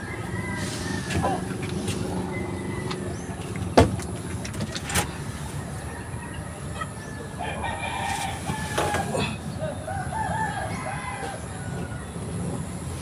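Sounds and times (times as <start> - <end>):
vehicle engine idling: 0.0 - 7.4
sharp knocks: 3.8 - 4.2.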